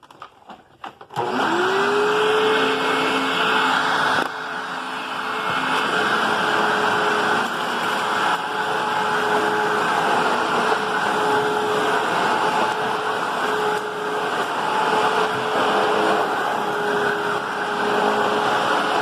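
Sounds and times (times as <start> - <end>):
vacuum cleaner motor whine: 1.0 - 19.0.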